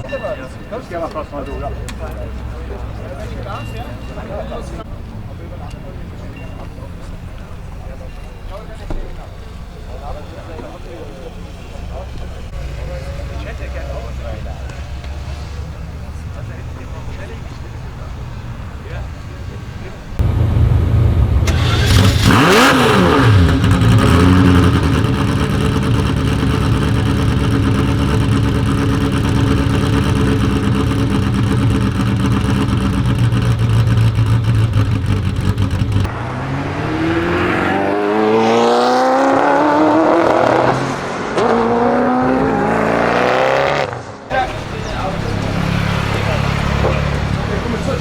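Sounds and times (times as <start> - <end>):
car engine revving and accelerating: 20.2 - 48.0.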